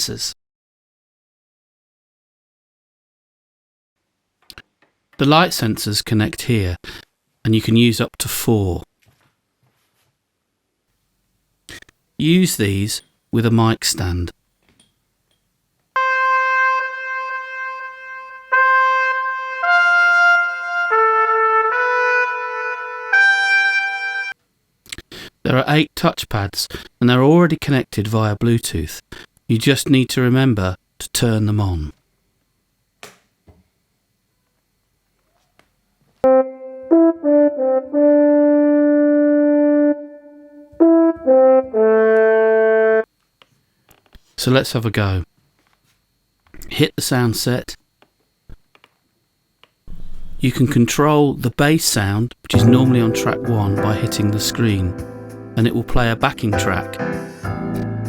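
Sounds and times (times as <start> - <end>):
synthesized trumpet notes: 16.0 - 24.4, 36.2 - 43.1, 52.5 - 58.0.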